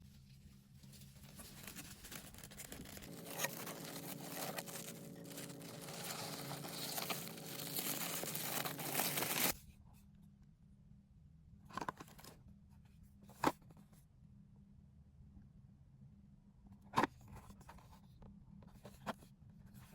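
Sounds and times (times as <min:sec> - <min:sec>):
packaging tearing and crinkling: 0:01.4 - 0:09.5.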